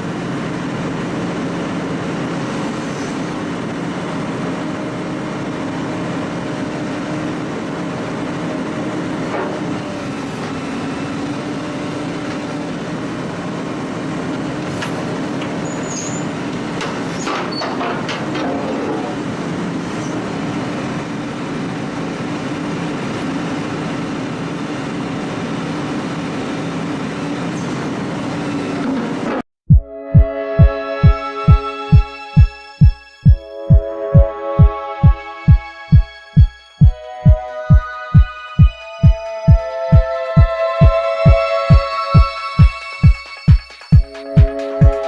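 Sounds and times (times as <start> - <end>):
machine engine drone: 0.0 - 29.4
metallic clanks and squeals: 15.6 - 19.2.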